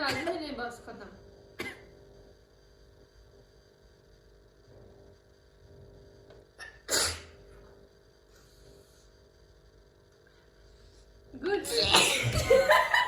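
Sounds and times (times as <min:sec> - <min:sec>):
low electrical hum: 0:00.0 - 0:13.0
person sneezing: 0:06.6 - 0:07.4, 0:11.7 - 0:12.6.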